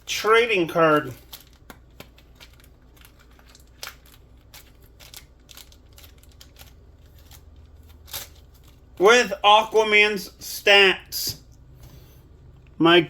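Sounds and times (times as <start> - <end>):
packaging clicks and rustles: 0.8 - 9.0.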